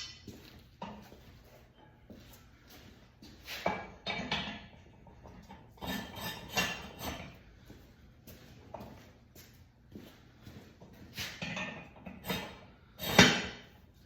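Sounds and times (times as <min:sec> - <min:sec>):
metal targets clanking: 0:00.0 - 0:00.3.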